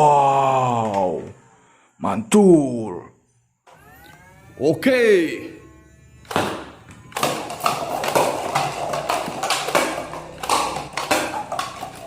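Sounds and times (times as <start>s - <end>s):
plastic toy gun clacking: 7.2s - 12.0s.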